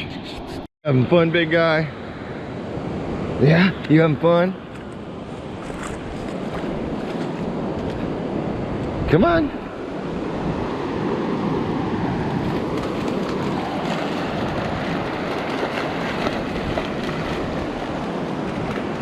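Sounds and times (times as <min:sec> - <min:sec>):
wind buffeting microphone: 0:05.1 - 0:19.0
surf rushing: 0:06.3 - 0:19.0.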